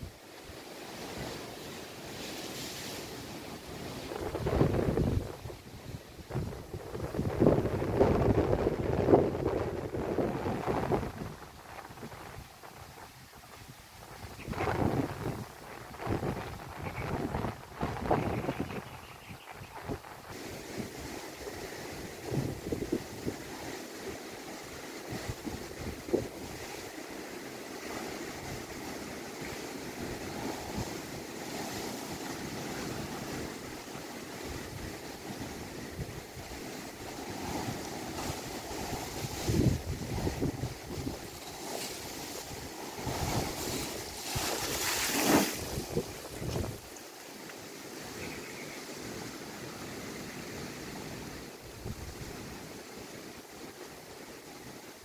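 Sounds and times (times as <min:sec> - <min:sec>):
waves breaking on shore: 0:00.0 - 0:55.0
strong wind: 0:03.7 - 0:23.8, 0:25.1 - 0:26.8, 0:34.4 - 0:46.9, 0:49.7 - 0:52.6
wind buffeting microphone: 0:03.9 - 0:23.8, 0:34.4 - 0:46.9.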